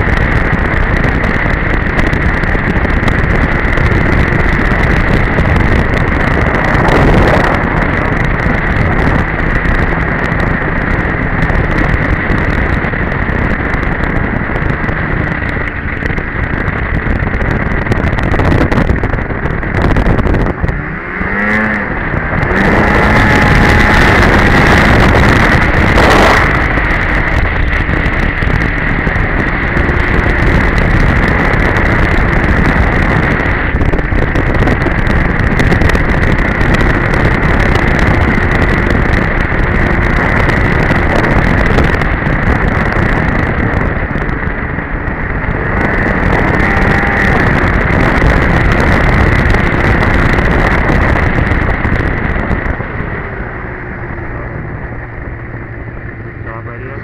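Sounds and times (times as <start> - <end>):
snowmobile engine and track: 0.0 - 57.0
wind on microphone: 0.0 - 57.0.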